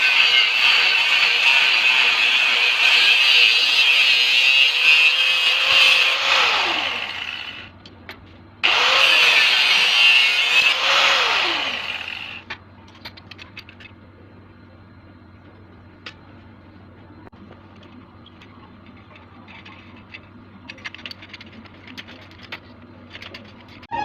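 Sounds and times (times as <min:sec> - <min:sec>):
angle grinder spinning: 0:00.0 - 0:07.7, 0:08.6 - 0:12.5.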